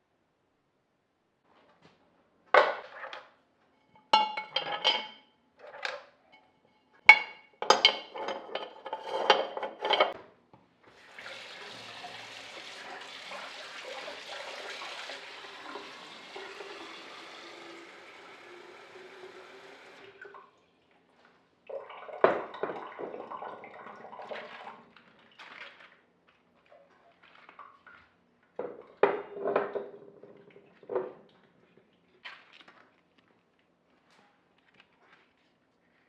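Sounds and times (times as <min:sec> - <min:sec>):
glass or ceramic clinking: 0:04.0 - 0:05.2
water running from a tap: 0:10.9 - 0:20.4.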